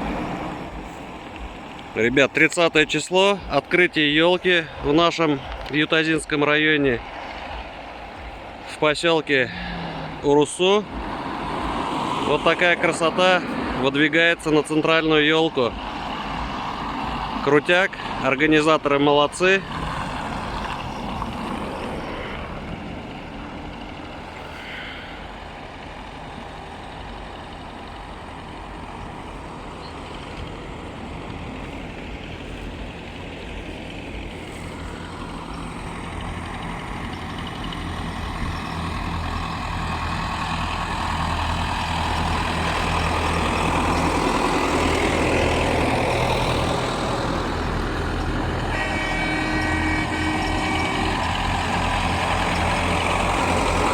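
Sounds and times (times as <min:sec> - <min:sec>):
heavy vehicle engine humming: 0:00.0 - 0:53.9.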